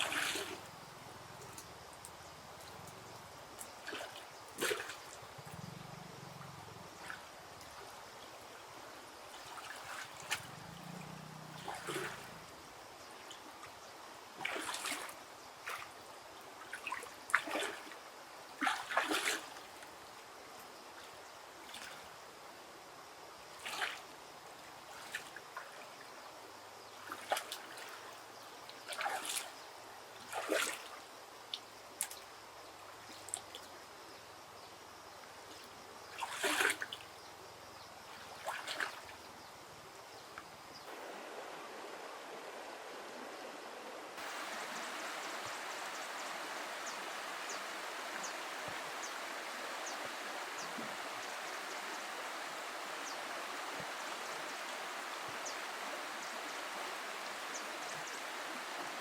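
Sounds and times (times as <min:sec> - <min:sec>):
water splashing and dripping: 0:00.0 - 0:00.7, 0:14.4 - 0:15.9, 0:18.6 - 0:19.6, 0:28.8 - 0:29.5, 0:30.3 - 0:32.3, 0:36.2 - 0:37.0, 0:38.3 - 0:39.2
faint background hiss: 0:00.0 - 0:59.0.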